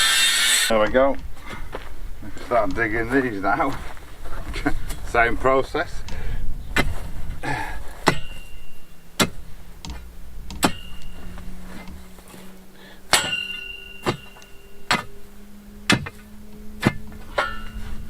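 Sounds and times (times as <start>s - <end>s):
metal tool striking stony ground: 8.0s - 12.4s, 13.1s - 15.2s, 15.9s - 17.9s.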